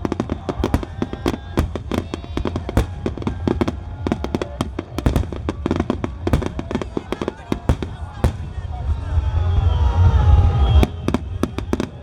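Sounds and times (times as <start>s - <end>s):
fireworks bursting: 0.0s - 12.0s
low rumble: 7.6s - 12.0s.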